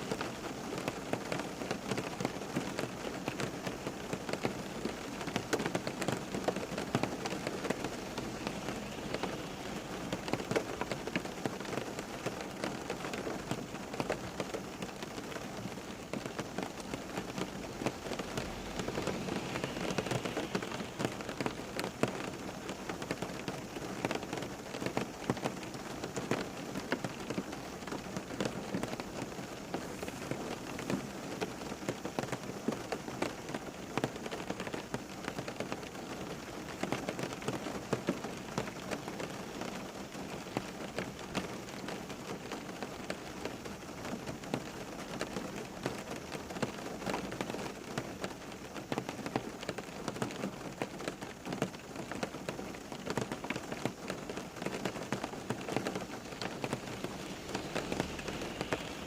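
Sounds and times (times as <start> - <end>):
steady rain falling: 0.0 - 59.0.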